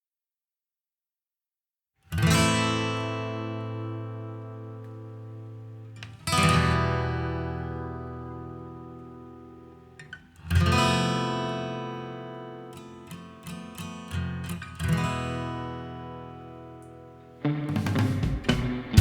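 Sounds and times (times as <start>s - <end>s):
acoustic guitar strumming: 10.5s - 19.0s.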